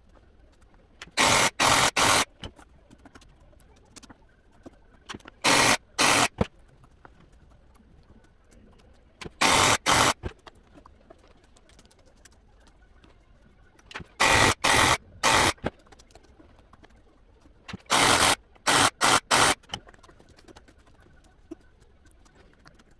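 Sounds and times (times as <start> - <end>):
machine running in short bursts: 1.2 - 2.3, 5.4 - 6.4, 9.4 - 10.2, 14.2 - 15.6, 17.9 - 19.6.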